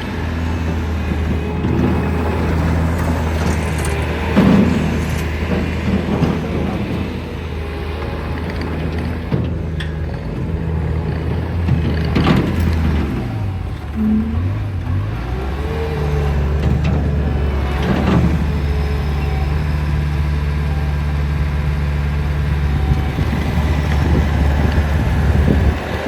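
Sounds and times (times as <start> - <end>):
diesel engine running: 0.0 - 26.0.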